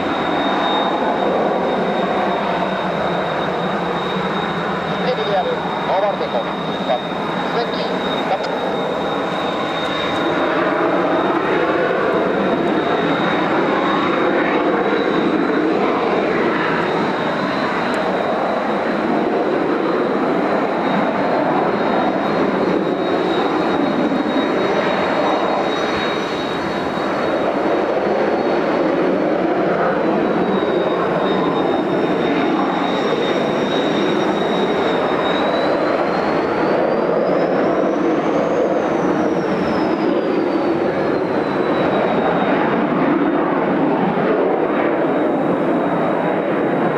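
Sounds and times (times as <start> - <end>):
high turbine whine: 0.0 - 46.9
jet engine roar: 0.0 - 46.9.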